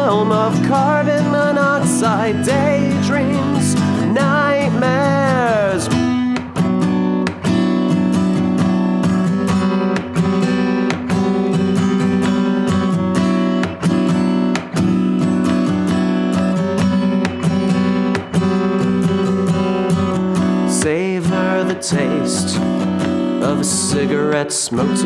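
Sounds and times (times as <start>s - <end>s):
person singing: 0.0s - 6.4s, 20.6s - 25.0s
acoustic guitar strumming: 0.0s - 25.0s.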